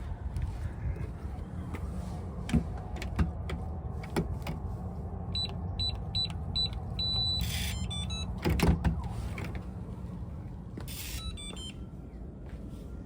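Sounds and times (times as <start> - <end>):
long confirming beep: 5.4 - 8.3
keypad beeps: 5.4 - 8.4, 10.9 - 11.8.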